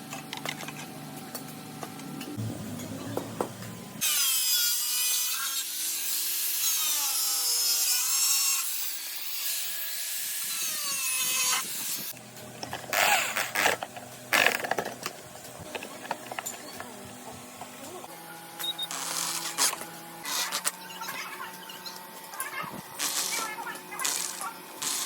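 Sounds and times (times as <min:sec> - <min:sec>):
power tool cutting with squeal: 0:04.0 - 0:12.1, 0:12.9 - 0:13.8, 0:18.6 - 0:22.0.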